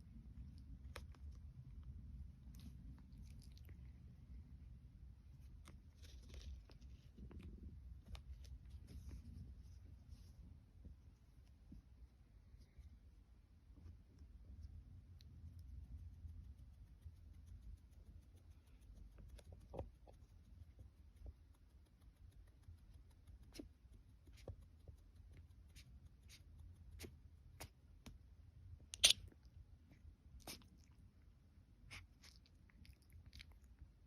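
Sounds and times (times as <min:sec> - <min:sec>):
puppy mouth clicks: 0:28.9 - 0:29.4.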